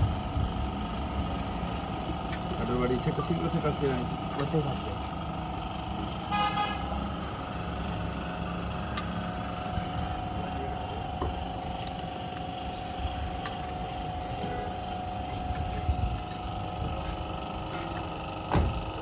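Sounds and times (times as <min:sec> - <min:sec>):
car engine idling: 0:00.0 - 0:19.0
car horn toot: 0:06.2 - 0:07.0.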